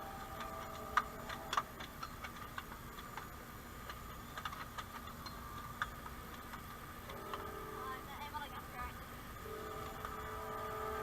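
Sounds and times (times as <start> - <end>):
faint high whine: 0.0 - 11.0.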